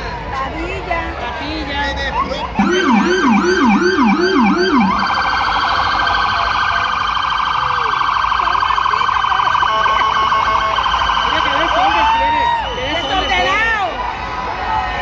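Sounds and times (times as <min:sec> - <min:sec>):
electronic siren yelp and warble: 0:02.2 - 0:09.6.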